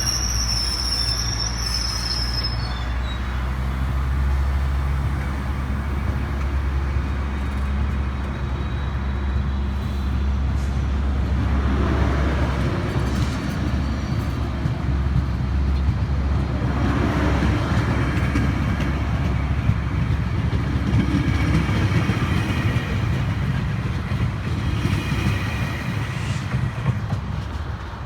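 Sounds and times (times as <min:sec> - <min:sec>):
high-pitched wheel squeal: 0:00.0 - 0:03.8
diesel locomotive engine: 0:00.0 - 0:28.0
wheels rumbling on rail: 0:00.0 - 0:28.0.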